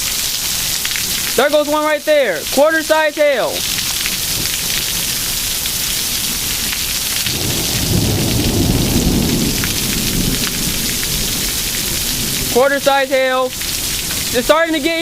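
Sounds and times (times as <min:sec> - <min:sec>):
heavy rain pouring: 0:00.0 - 0:15.0
hailstones striking: 0:03.6 - 0:15.0.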